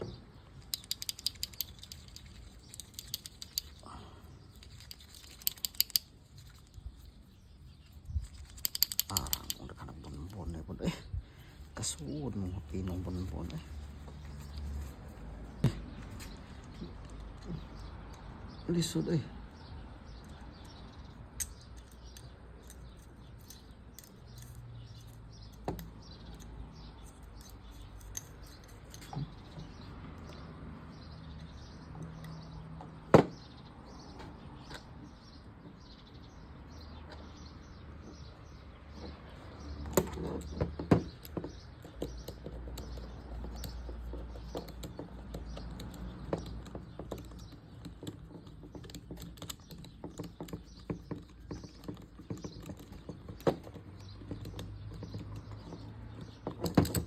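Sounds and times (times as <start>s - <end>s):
tools and metal parts clicking: 0.0s - 10.8s, 20.1s - 30.4s, 38.9s - 57.0s.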